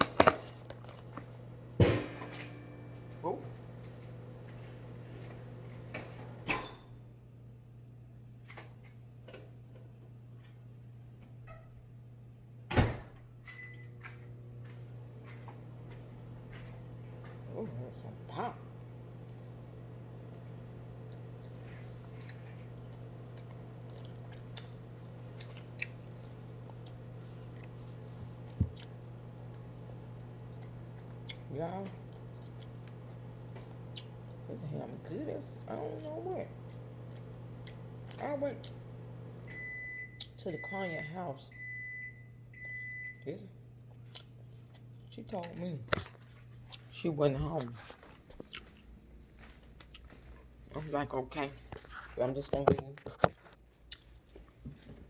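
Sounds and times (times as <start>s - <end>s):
person chewing: 19.2s - 19.6s, 20.2s - 34.5s, 35.4s - 39.1s, 43.8s - 50.8s, 53.4s - 55.0s.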